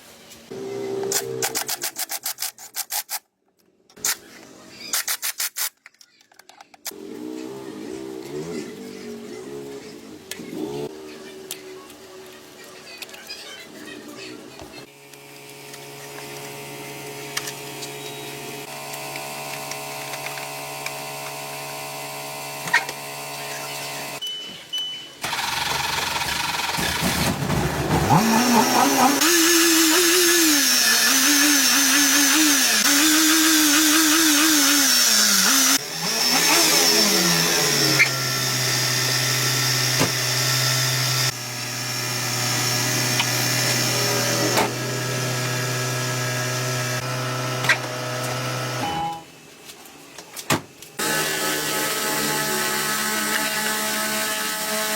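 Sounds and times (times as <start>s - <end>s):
engine revving: 25.3s - 48.6s.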